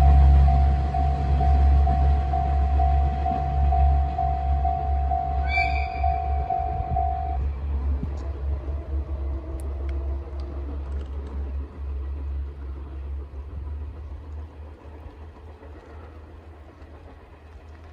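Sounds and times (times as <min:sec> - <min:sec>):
diesel train engine and wheel rumble: 0:00.0 - 0:17.9
faint clicks: 0:09.5 - 0:11.6.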